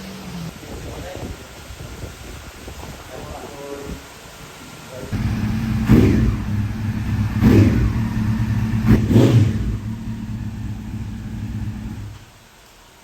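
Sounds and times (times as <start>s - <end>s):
engine revving: 5.2s - 12.2s
vehicle engine idling: 5.2s - 12.3s.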